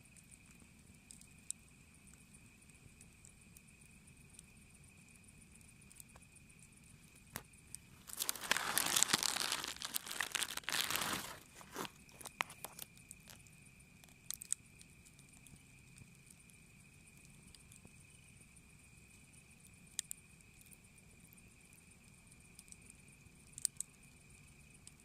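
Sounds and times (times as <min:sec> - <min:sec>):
high insect trill: 0:03.4 - 0:24.8
rustling crunching noise: 0:08.0 - 0:13.4
sharp crackles: 0:08.0 - 0:13.5.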